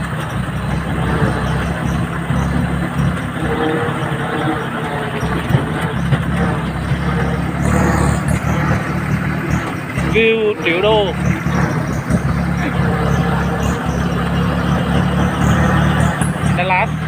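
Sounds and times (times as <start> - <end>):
tractor engine droning: 0.0 - 17.0.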